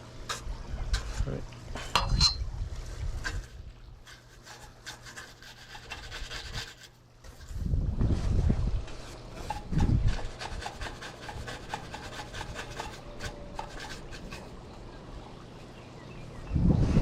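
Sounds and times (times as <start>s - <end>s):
wind rumble on microphone: 0.3s - 4.0s, 6.0s - 13.9s, 16.2s - 17.0s
brush scrubbing metal track: 3.2s - 7.8s, 8.9s - 14.6s.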